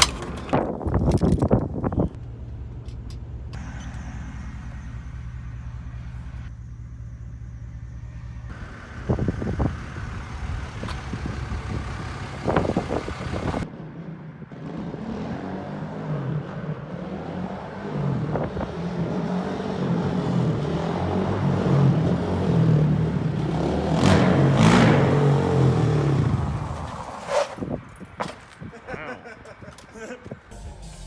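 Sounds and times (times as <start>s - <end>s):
quad engine idling and revving: 2.2s - 27.9s.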